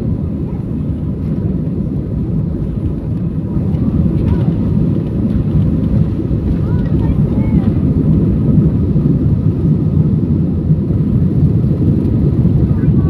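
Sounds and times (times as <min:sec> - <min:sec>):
jet engine cabin rumble: 0:00.0 - 0:13.0.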